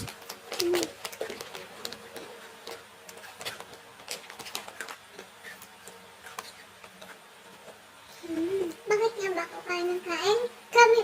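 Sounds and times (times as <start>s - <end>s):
people eating clicks and taps: 0.0s - 7.8s.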